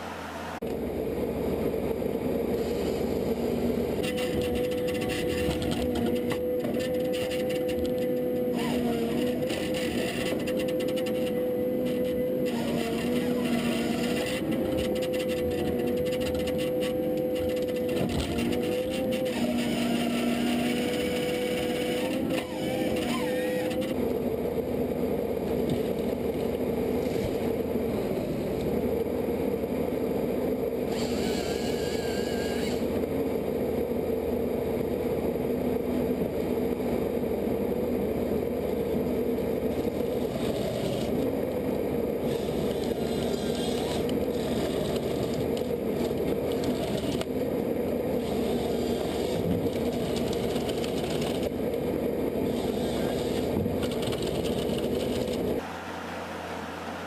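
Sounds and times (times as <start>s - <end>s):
machine engine running: 0.0s - 57.0s
high scraping noise: 2.6s - 24.0s.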